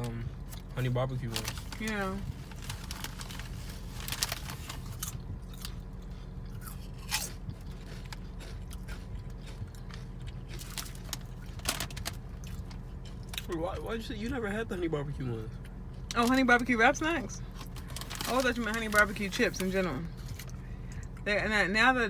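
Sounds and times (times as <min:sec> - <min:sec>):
potato chips being chewed: 0:00.1 - 0:13.9, 0:17.5 - 0:21.2.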